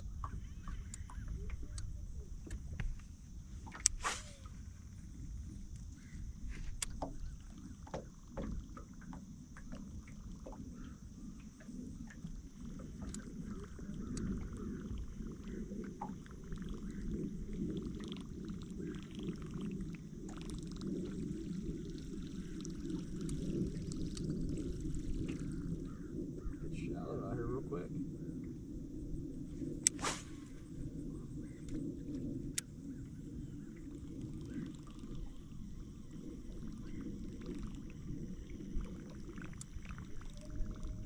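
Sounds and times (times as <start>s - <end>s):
water lapping against boat hull: 0.0s - 26.8s, 29.6s - 41.0s
high insect drone: 0.0s - 41.0s
light clicks: 12.9s - 14.6s.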